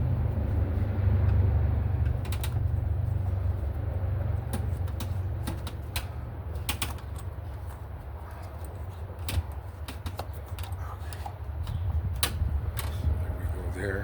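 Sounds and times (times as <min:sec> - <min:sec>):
low steady rumble: 0:00.0 - 0:14.0
clicks and taps of hoses and clamps: 0:04.4 - 0:13.1.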